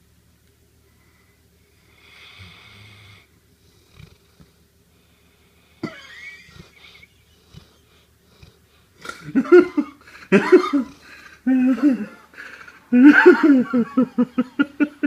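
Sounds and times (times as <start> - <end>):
dog snoring: 1.7 - 9.3.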